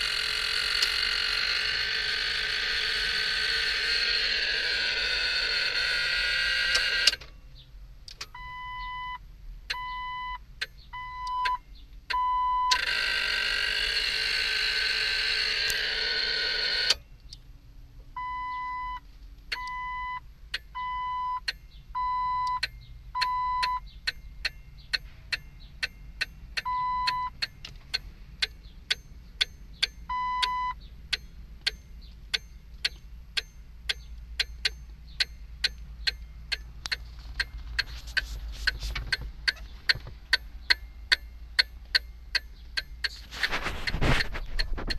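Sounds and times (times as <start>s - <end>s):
dashboard warning chime beeps: 8.2s - 13.1s, 18.2s - 37.9s.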